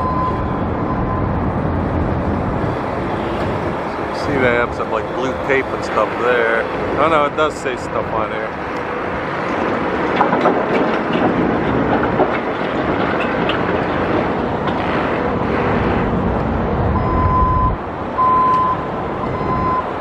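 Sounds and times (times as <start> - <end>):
high steady beep: 0.0 - 1.4, 17.0 - 19.9
deep rumble: 0.0 - 20.0
heavy vehicle traffic rumble: 0.0 - 20.0.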